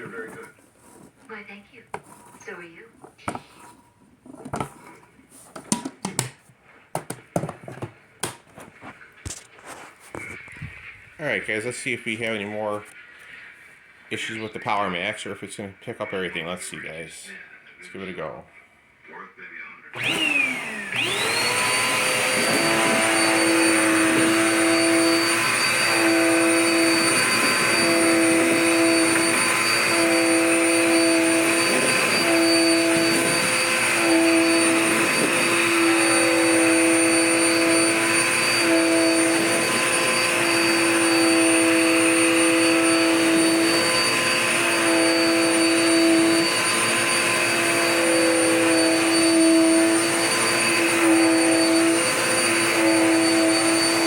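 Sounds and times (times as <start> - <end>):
vacuum cleaner motor whine: 20.0 - 54.0.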